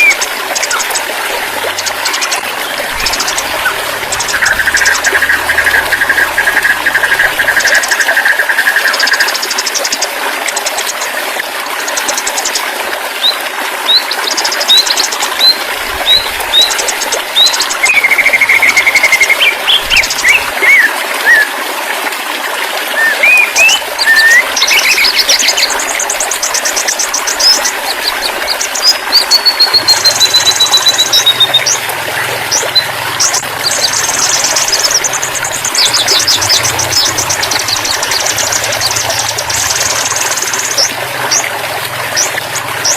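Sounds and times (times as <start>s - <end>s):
bird singing trills and whistles: 0.0s - 0.8s, 13.2s - 21.5s, 23.0s - 31.8s
running water: 0.0s - 42.9s.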